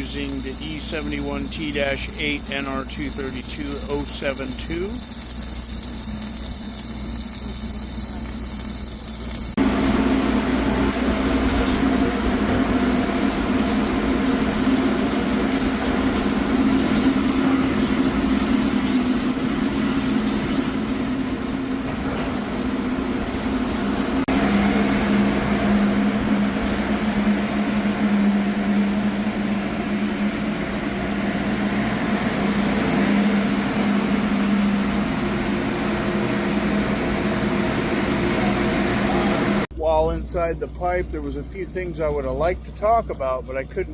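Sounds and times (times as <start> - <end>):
air blower droning in steel pipe: 0.0 - 43.9.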